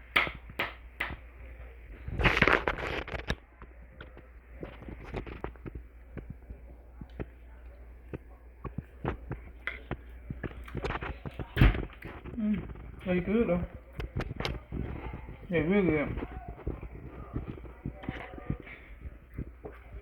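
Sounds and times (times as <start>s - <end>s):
chewing: 4.8s - 15.5s.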